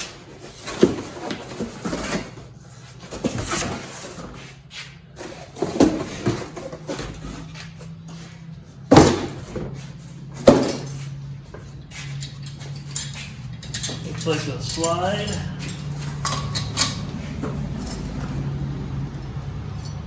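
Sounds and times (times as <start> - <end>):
metal hardware clunking: 8.9 - 20.0.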